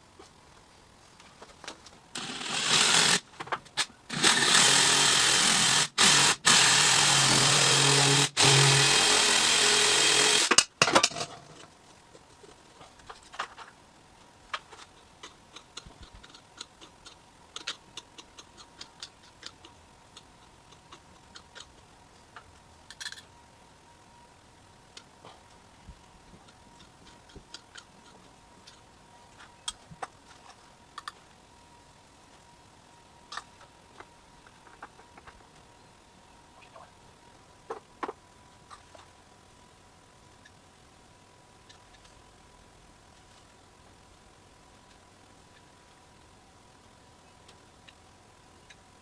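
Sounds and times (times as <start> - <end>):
power tool running: 2.2 - 3.3, 4.1 - 10.6
faint clicks and ticks: 11.9 - 23.3, 24.9 - 31.4, 47.2 - 49.0.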